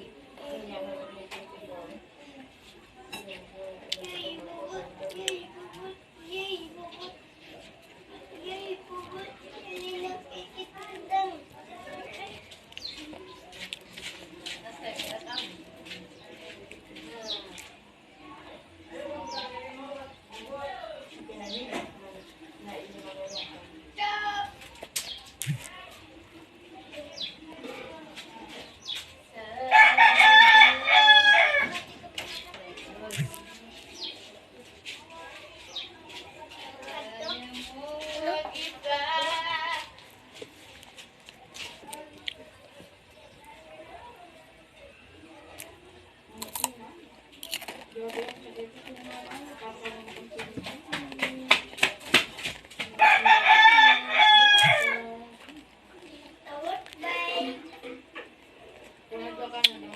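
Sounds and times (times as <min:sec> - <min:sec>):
rooster crowing: 0:29.7 - 0:31.8, 0:53.0 - 0:55.1.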